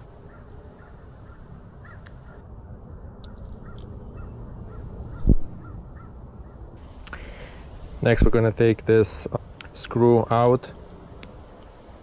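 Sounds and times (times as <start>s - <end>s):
low background rumble: 0.0s - 10.0s
faint bird calls: 0.2s - 2.5s, 3.2s - 7.5s
light clicks of small parts: 9.5s - 11.8s.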